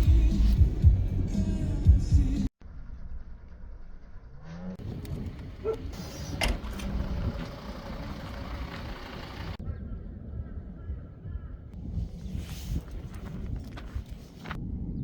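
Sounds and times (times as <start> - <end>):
car engine and road noise: 0.0 - 2.5, 3.2 - 9.6.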